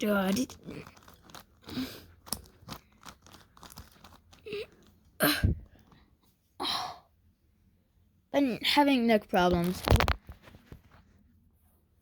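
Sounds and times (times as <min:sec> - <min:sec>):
puzzle cube clicking and scraping: 0:00.0 - 0:05.1.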